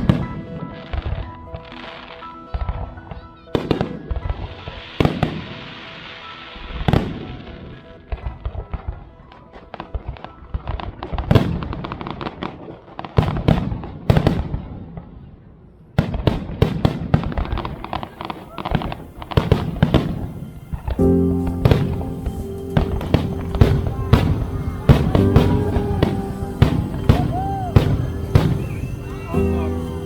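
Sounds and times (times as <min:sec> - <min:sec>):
fireworks crackling: 0:00.0 - 0:14.5, 0:16.0 - 0:30.0
fireworks sizzling hiss: 0:04.0 - 0:07.6, 0:17.3 - 0:30.0
fireworks booming: 0:16.0 - 0:30.0.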